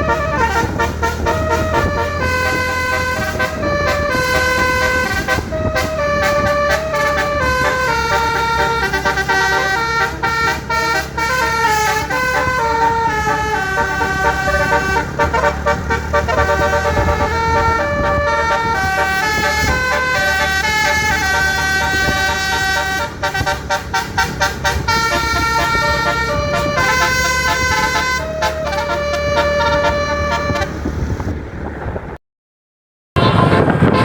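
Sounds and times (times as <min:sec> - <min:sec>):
multi-tone bus horn tune: 0:00.0 - 0:31.2, 0:33.2 - 0:34.0
low engine rumble: 0:00.0 - 0:32.2.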